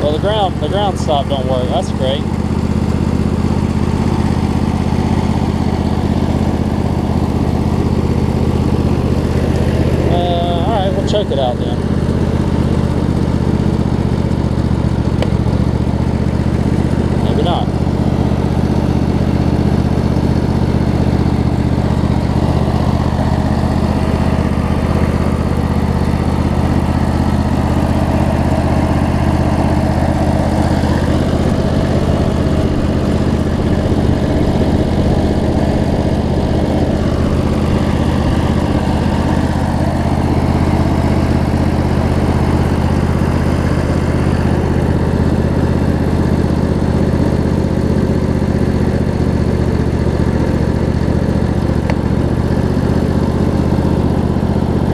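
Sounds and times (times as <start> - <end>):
riding mower engine running: 0.0 - 54.9.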